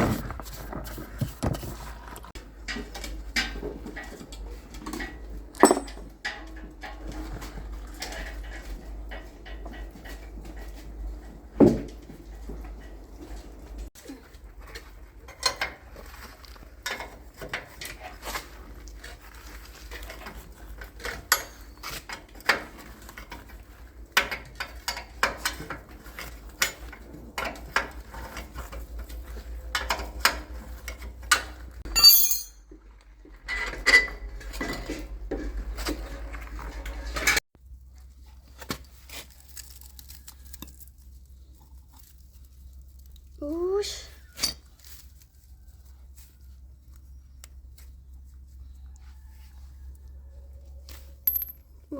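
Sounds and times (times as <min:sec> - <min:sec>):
metal tools clinking: 0:05.5 - 0:06.2, 0:21.0 - 0:22.0, 0:31.9 - 0:32.7, 0:44.3 - 0:44.7, 0:51.2 - 0:51.6.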